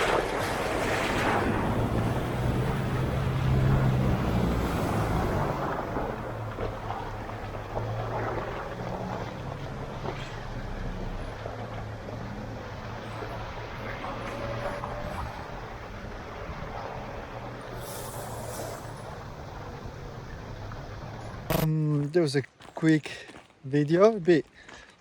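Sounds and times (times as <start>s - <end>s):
vehicle engine low hum: 0.2s - 22.0s.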